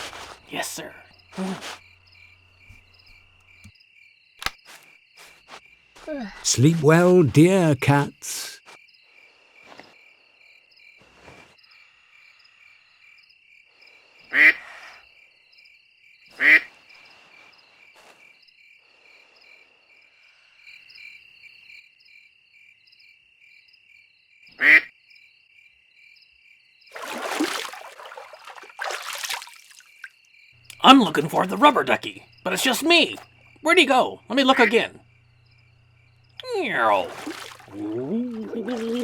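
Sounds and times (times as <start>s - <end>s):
crickets chirping: 0.0s - 39.0s
cartoon duck quacking: 34.3s - 34.9s.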